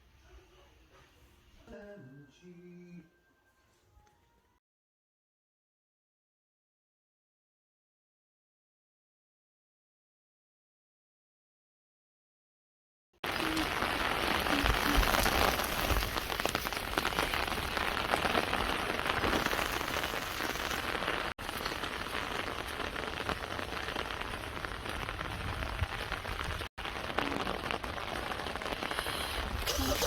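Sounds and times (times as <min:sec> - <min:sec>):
steady rain: 0:13.2 - 0:30.0.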